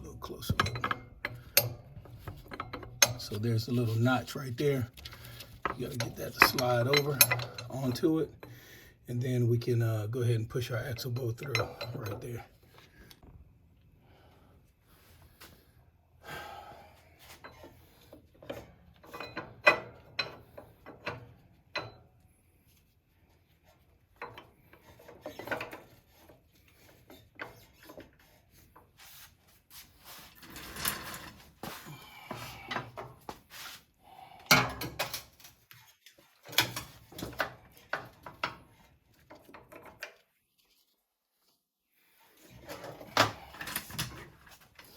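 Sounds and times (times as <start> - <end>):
metal clinks and knocks: 0.2 - 3.7.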